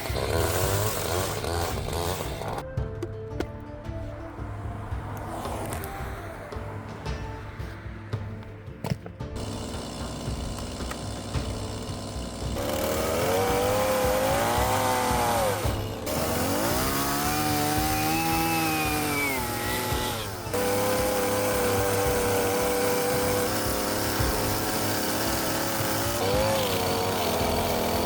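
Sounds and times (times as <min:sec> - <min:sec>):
chainsaw cutting wood: 0:00.0 - 0:02.6, 0:09.4 - 0:28.0.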